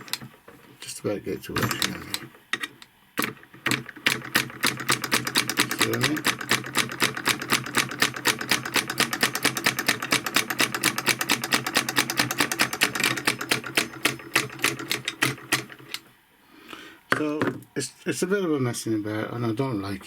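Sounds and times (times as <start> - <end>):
solenoid engine clicking: 0.0 - 0.6, 1.4 - 16.1.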